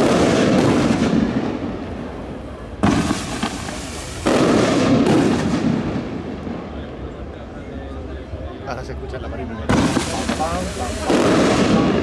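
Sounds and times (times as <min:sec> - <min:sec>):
fireworks booming: 0:00.0 - 0:06.9, 0:09.6 - 0:12.0
crackling rumbling tail: 0:00.0 - 0:07.0, 0:09.6 - 0:12.0.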